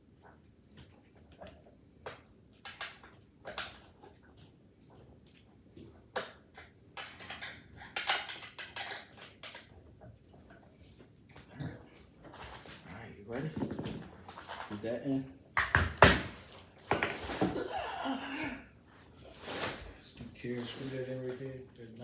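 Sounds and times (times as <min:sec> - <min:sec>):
furniture parts clicking and knocking: 0:13.4 - 0:14.8, 0:15.6 - 0:17.6
scraping and rattling: 0:19.2 - 0:22.0.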